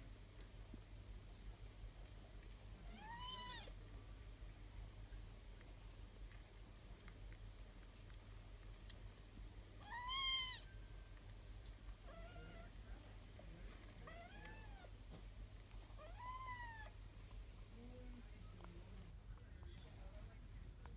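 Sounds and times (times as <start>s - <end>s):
kittens mewing: 15.9s - 17.0s.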